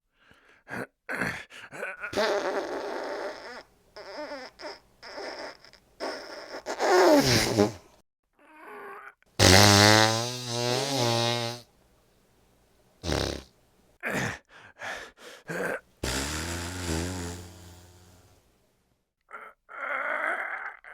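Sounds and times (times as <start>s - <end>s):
fart sounds: 2.1s - 7.8s, 9.4s - 11.7s, 13.0s - 13.5s, 16.0s - 18.4s.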